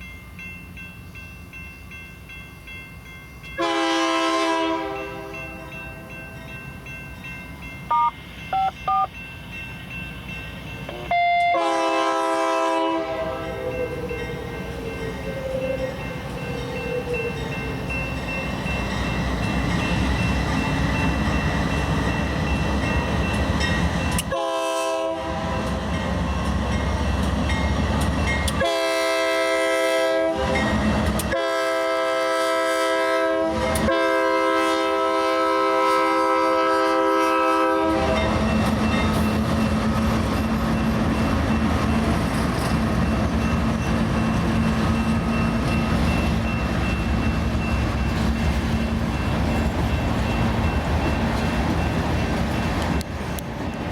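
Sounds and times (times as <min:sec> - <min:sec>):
locomotive air horn blasts: 0:03.6 - 0:05.7, 0:10.9 - 0:13.6, 0:24.2 - 0:25.6, 0:28.5 - 0:30.7, 0:31.3 - 0:38.3.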